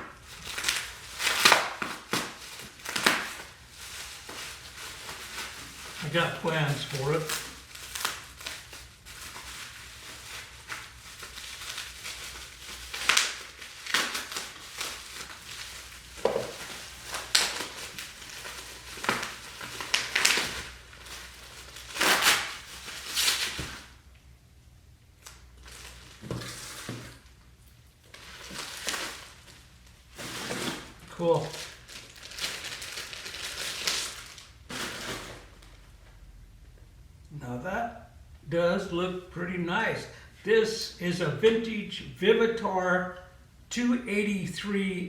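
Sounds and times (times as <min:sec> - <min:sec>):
packing material crinkling: 0:00.0 - 0:24.0, 0:25.2 - 0:36.2.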